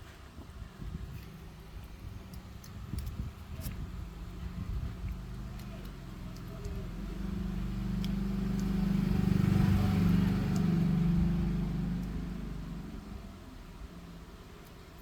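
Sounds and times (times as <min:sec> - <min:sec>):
motor vehicle passing by: 0:03.0 - 0:14.4.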